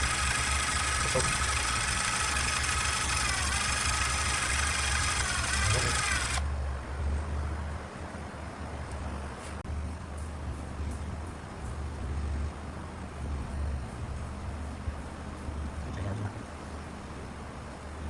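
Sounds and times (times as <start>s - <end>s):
high wavering whine: 0.0s - 6.4s
machinery low hum: 0.0s - 6.4s.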